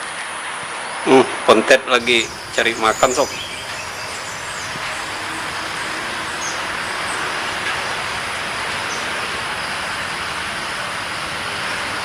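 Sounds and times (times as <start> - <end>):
outdoor rushing noise: 0.0 - 12.0
faint high bird chirps: 2.0 - 8.0.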